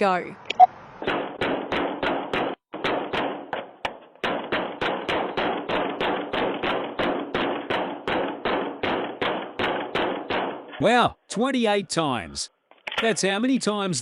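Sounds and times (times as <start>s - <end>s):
heavy knocking on door: 1.0s - 10.7s.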